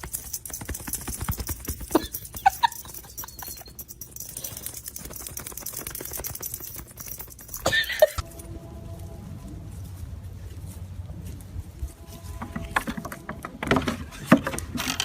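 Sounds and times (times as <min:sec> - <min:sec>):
steady low hum: 0:00.0 - 0:13.4
horse squealing: 0:01.2 - 0:04.0.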